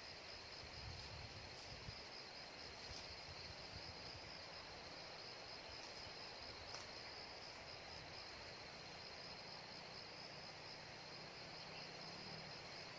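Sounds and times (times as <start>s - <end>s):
insect chorus: 0.0s - 12.9s
wind rumble on microphone: 0.6s - 4.5s.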